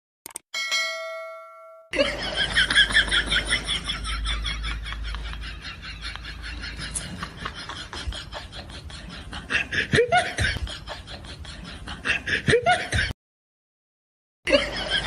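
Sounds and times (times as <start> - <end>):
rhythmic laughter: 2.0 - 13.2, 14.5 - 15.0.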